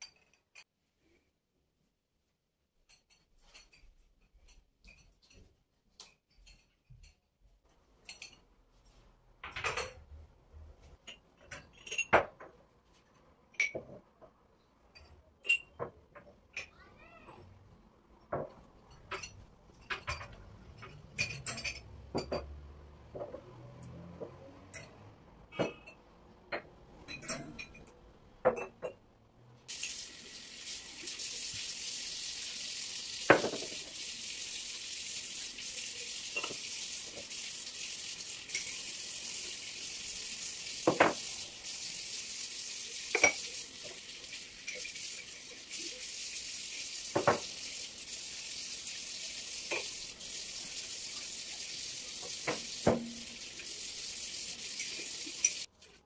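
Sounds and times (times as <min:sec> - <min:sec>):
dishes clinking: 0:00.0 - 0:00.7, 0:02.9 - 0:10.1, 0:11.0 - 0:16.7, 0:18.2 - 0:29.0, 0:33.3 - 0:33.8, 0:36.3 - 0:37.3, 0:43.0 - 0:44.0, 0:44.6 - 0:45.9, 0:49.6 - 0:50.0
tap running into sink: 0:33.2 - 0:34.1, 0:36.2 - 0:37.4, 0:40.7 - 0:41.3, 0:47.1 - 0:47.7, 0:49.5 - 0:55.7.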